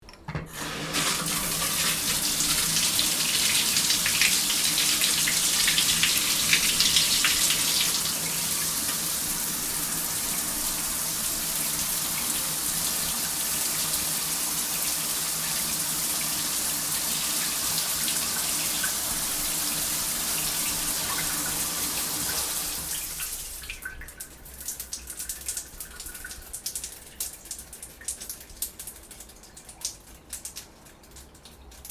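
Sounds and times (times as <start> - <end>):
water dripping: 0.0 - 16.4, 17.2 - 31.9
shower water spraying: 0.5 - 23.8.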